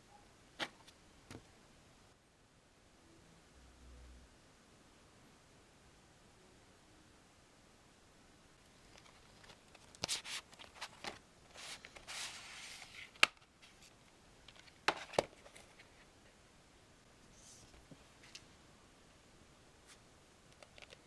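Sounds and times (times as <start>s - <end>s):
sliding rustle: 8.9s - 13.9s.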